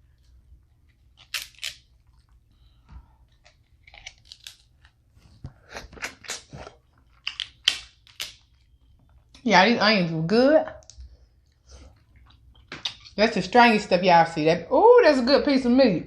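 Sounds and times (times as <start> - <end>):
crunching and chewing: 0.6 - 5.0, 5.7 - 9.4.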